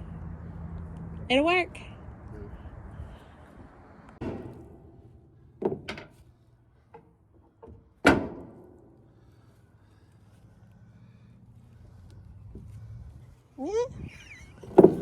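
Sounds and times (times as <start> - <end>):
knocks and thuds: 4.2 - 6.2, 14.6 - 15.0.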